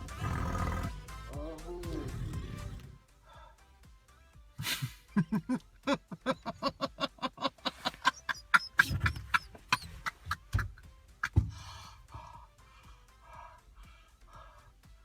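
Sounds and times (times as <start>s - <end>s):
person laughing uncontrollably: 4.6s - 11.4s.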